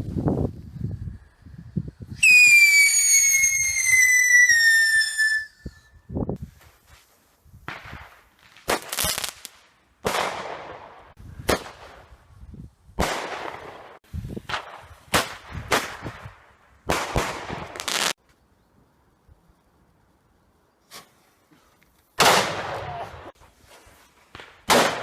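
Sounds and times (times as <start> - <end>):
fireworks bangs with hiss: 6.4 - 18.2, 20.8 - 25.0.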